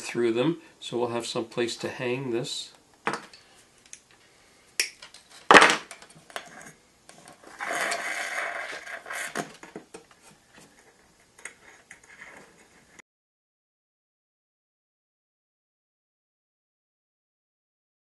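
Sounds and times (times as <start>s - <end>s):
scraping and rustling: 6.2s - 13.0s.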